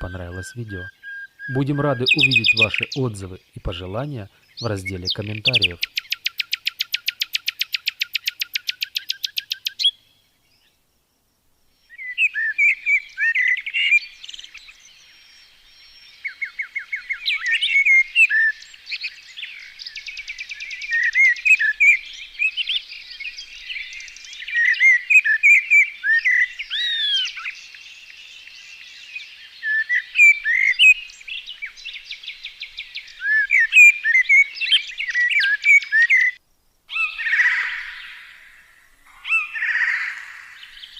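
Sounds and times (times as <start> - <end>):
bird trill: 0.0 - 10.8, 11.7 - 40.9
birds chirping and warbling: 0.0 - 40.9.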